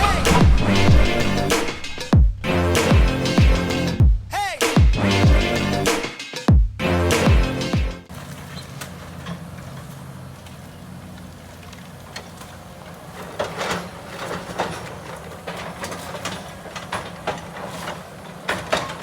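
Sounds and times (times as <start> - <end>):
metal knocks and clanks: 0.0 - 4.1, 12.2 - 19.0
diesel excavator engine running: 0.0 - 6.0, 6.8 - 19.0.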